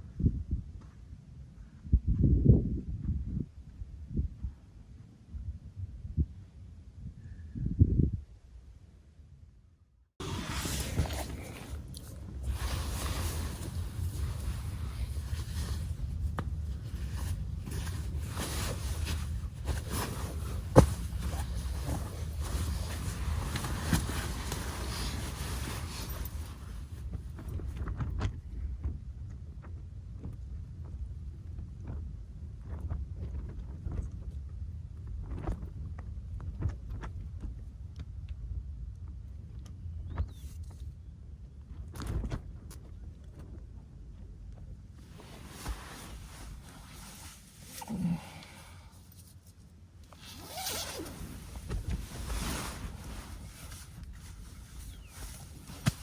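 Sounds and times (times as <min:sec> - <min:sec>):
wind rumbling on microphone: 0:00.0 - 0:08.6, 0:10.2 - 0:47.4, 0:50.4 - 0:56.0
soft handling and rustling: 0:10.2 - 0:28.4, 0:41.6 - 0:56.0.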